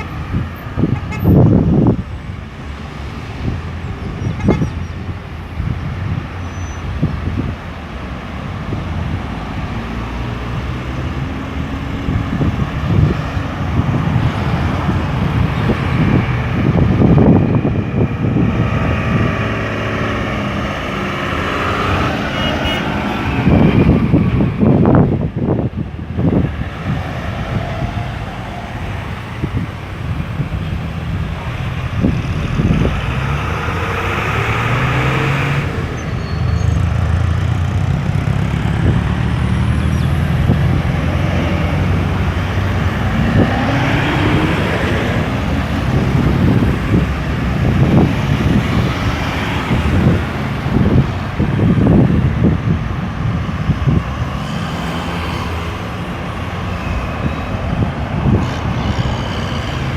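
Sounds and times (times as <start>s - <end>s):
vehicles driving past: 0.0s - 59.9s
car pulling away: 26.2s - 52.2s.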